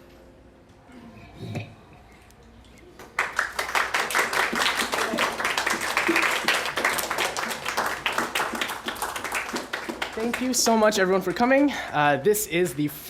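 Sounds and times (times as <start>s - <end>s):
voices among claps: 3.0s - 10.6s
audience clapping: 3.0s - 10.9s.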